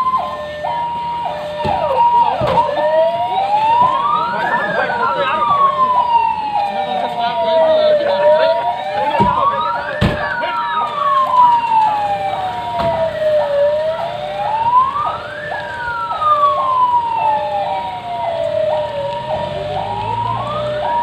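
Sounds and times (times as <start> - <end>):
police siren wailing: 0.0 - 21.0
two-tone police siren: 0.0 - 21.0.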